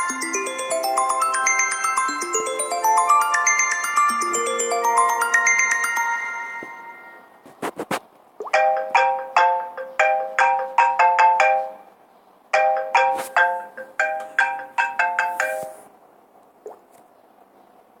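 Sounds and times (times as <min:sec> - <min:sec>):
phone ringtone chime melody: 0:00.0 - 0:07.4, 0:08.6 - 0:11.8, 0:12.6 - 0:15.9.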